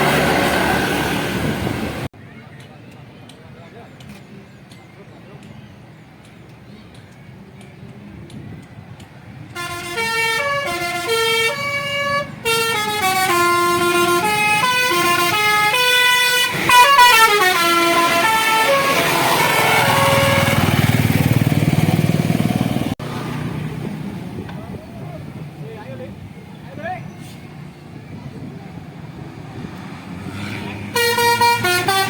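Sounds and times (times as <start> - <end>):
engine and road rumble: 0.0 - 32.0
musical air horn melody: 9.5 - 20.8, 30.8 - 32.0.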